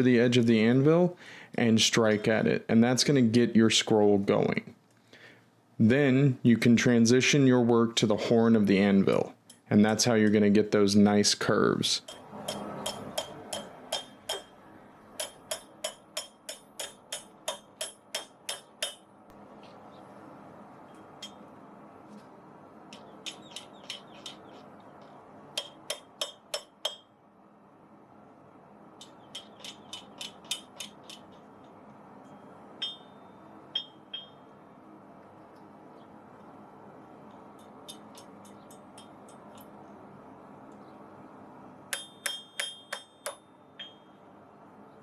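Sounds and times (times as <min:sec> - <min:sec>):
hammer striking steel on anvil: 0:12.0 - 0:14.6, 0:15.2 - 0:19.1, 0:21.2 - 0:21.4, 0:25.5 - 0:27.1, 0:32.8 - 0:34.5, 0:37.6 - 0:39.7, 0:41.9 - 0:44.2.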